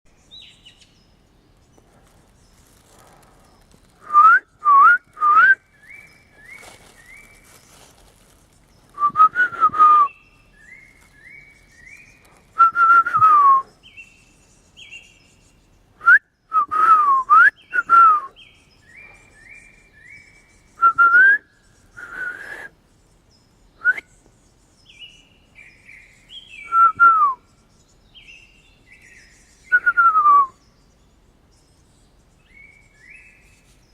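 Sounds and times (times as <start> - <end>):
person whistling gliding notes: 4.0 - 5.6, 9.0 - 10.2, 12.6 - 13.7, 16.0 - 18.3, 20.8 - 21.4, 22.0 - 22.7, 23.8 - 24.0, 26.7 - 27.4, 29.7 - 30.6.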